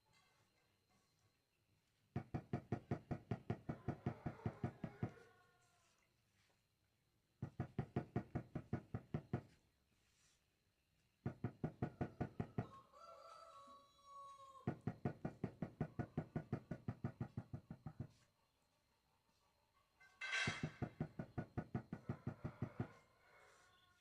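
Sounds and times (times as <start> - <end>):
rapid tapping on floor tile: 14.7 - 18.1.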